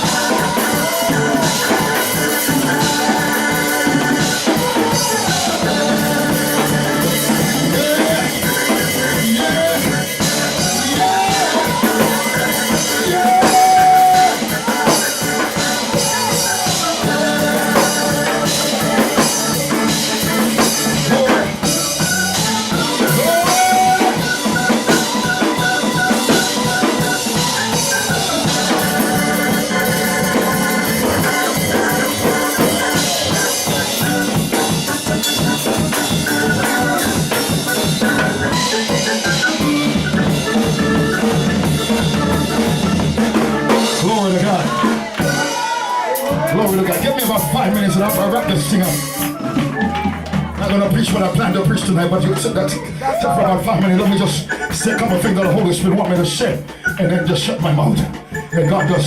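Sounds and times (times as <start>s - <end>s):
person singing long notes: 0.0s - 42.7s
drum kit beat: 0.0s - 59.0s
live worship band playing: 0.0s - 59.0s.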